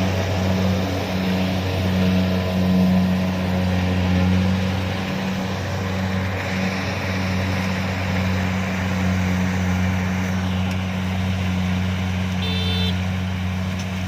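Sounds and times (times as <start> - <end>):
combine harvester running: 0.0 - 14.0.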